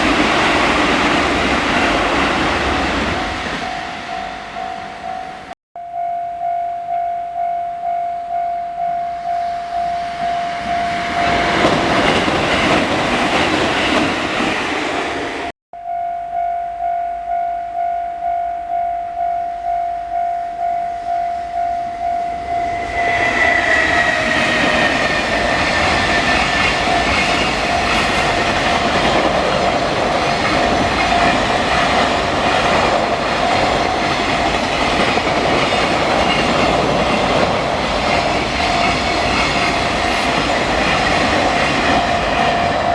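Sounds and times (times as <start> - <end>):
train passing: 0.0 - 5.5, 9.1 - 15.5, 21.0 - 42.9
train rumble and wheel clatter: 0.0 - 5.5, 10.4 - 15.5, 22.4 - 42.9
train high tone: 0.8 - 14.0, 15.4 - 42.9
level crossing bell clanging: 3.6 - 11.8.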